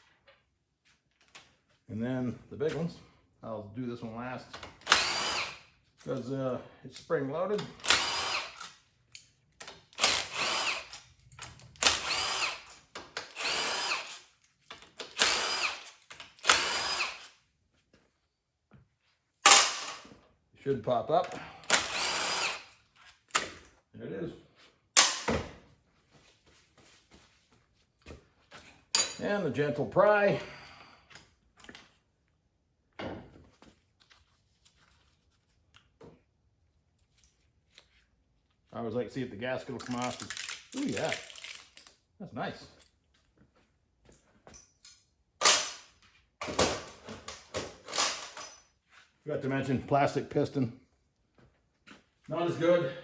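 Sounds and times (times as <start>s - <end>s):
power drill motor whining: 4.8s - 5.6s, 7.8s - 8.6s, 10.0s - 10.9s, 11.8s - 14.2s, 15.0s - 17.3s, 21.6s - 22.8s.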